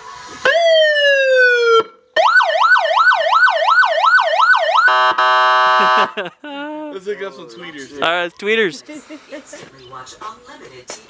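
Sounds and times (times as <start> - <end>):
siren yelp warbling: 0.4 - 6.2.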